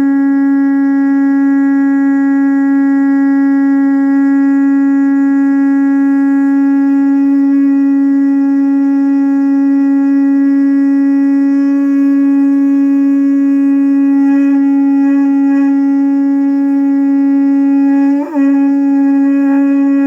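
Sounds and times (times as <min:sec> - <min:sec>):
conch shell blown: 0:00.0 - 0:20.0.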